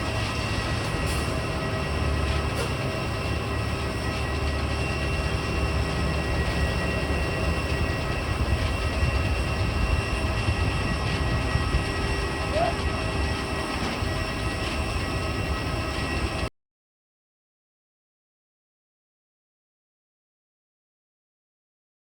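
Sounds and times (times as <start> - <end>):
jet engines rumbling: 0.0 - 16.5
thin steady engine whine: 0.0 - 16.5.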